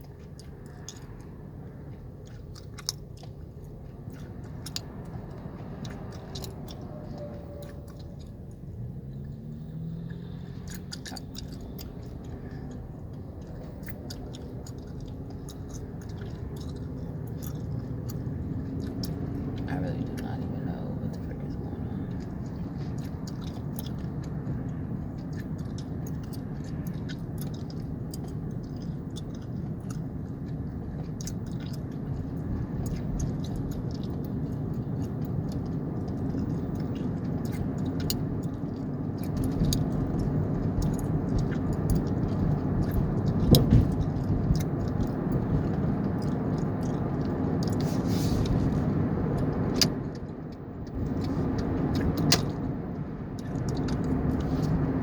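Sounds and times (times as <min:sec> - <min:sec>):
gum chewing smacks: 0:00.0 - 0:52.7
car rumbling in traffic: 0:00.0 - 0:55.0.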